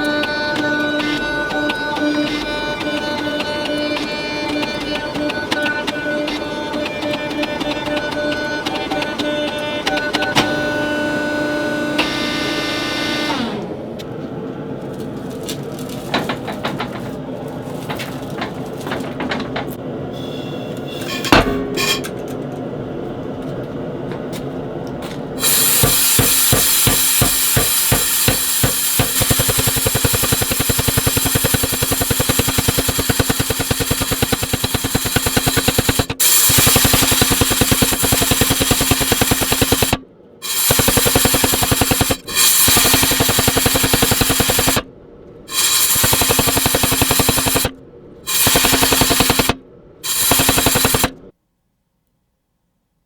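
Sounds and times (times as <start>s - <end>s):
power hammer pounding steel: 0.0s - 13.2s, 25.4s - 44.9s, 45.5s - 51.3s
motor hum: 0.0s - 15.4s, 24.8s - 51.3s.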